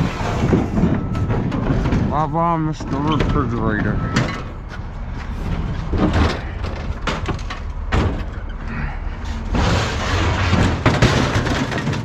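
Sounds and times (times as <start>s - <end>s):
heavy metal bangs and thuds: 0.0s - 12.0s.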